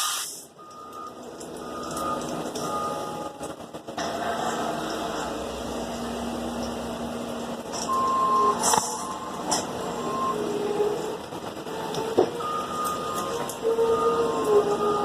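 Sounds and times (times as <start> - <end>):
heavy truck engine running: 0.1 - 15.0
backup alarms beeping: 0.6 - 3.5, 7.8 - 15.0
sharp knocks and clanks: 11.3 - 13.6.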